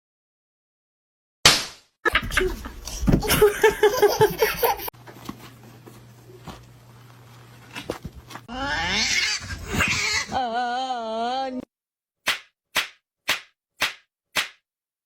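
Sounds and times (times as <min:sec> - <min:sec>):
person laughing: 0:02.1 - 0:04.9.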